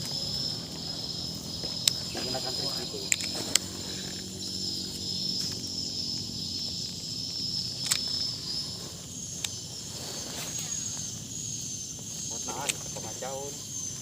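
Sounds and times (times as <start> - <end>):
insects buzzing: 0.0 - 14.0
sharp clicks: 3.0 - 4.3, 5.4 - 8.3, 12.4 - 13.0.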